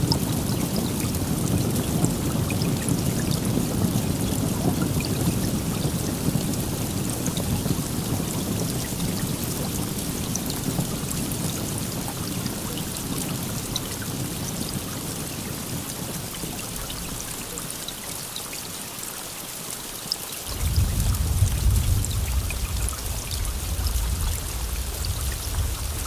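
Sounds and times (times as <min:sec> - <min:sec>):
steady rain: 0:00.0 - 0:26.0
thunder rumble: 0:20.5 - 0:26.0.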